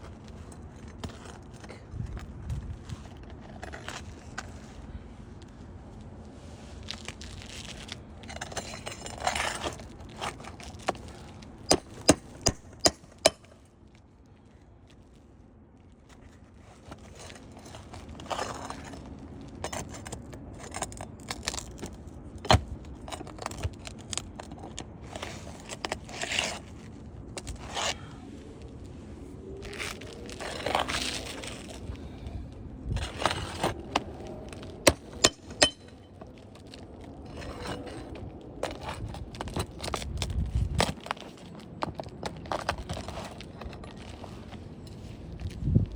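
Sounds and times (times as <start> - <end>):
hand tools scraping roof shingles: 7.2 - 13.6, 16.6 - 28.1, 32.9 - 45.1.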